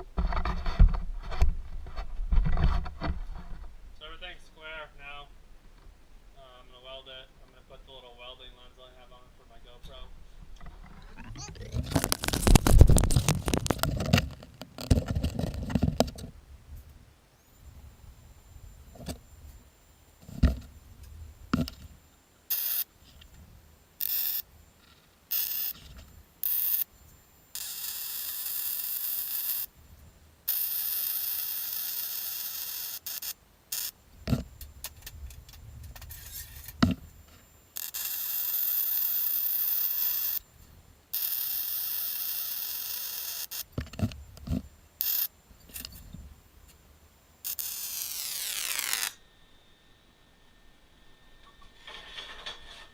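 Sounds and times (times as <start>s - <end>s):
handling noise: 10.6s - 16.4s
welding arc hissing and crackling: 22.5s - 23.0s, 24.0s - 24.5s, 25.3s - 26.9s, 27.5s - 29.8s, 30.5s - 34.0s, 37.7s - 40.4s, 41.1s - 43.8s, 45.0s - 45.4s, 47.4s - 49.2s.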